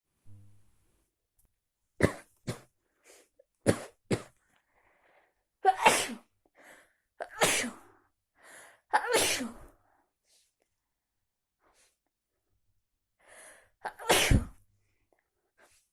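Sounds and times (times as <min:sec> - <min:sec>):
person sneezing: 0:05.7 - 0:06.3, 0:07.3 - 0:07.8, 0:09.0 - 0:09.7, 0:13.9 - 0:14.6.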